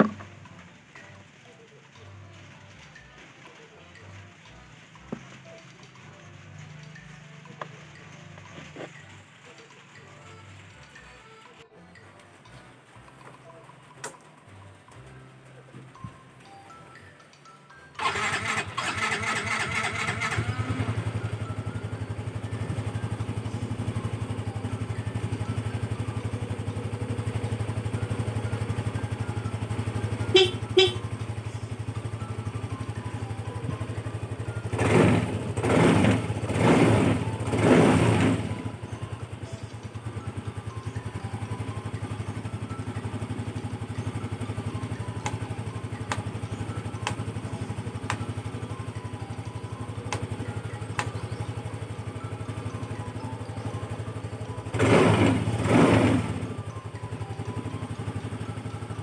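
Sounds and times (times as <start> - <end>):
scooter engine starting and idling: 0.0 - 0.4, 18.0 - 59.0
throttle revs: 18.0 - 59.0
short horn beeps: 30.2 - 31.2.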